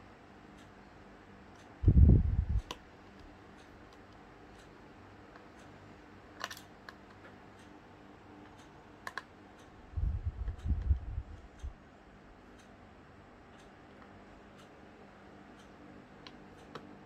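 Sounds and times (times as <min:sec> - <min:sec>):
faint ticking: 0:00.4 - 0:17.0
light clicks of small tools: 0:15.5 - 0:17.0.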